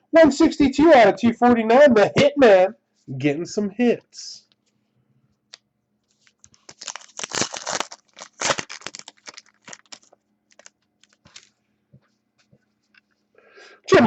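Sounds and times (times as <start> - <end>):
cards and plastic crinkling: 5.5 - 11.6.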